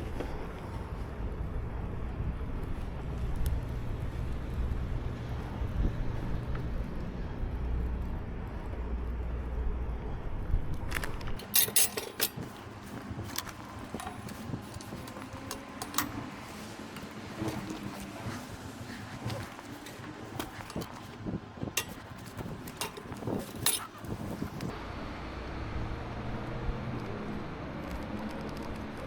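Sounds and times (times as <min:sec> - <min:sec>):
wind and bicycle tyres rumbling: 0:00.0 - 0:24.8
sharp clicks and metallic clinks: 0:11.4 - 0:24.7.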